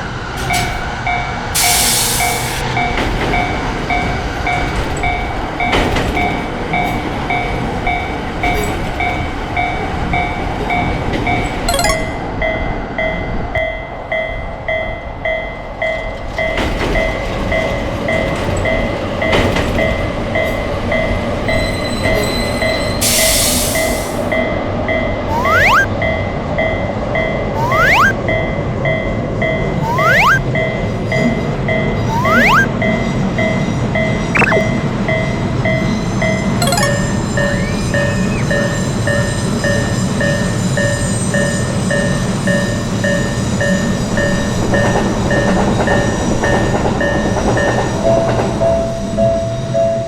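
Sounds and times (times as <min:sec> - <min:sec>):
level-crossing warning bell: 0:00.2 - 0:50.0
train wheels rumbling on rail: 0:16.1 - 0:24.3, 0:38.5 - 0:50.0.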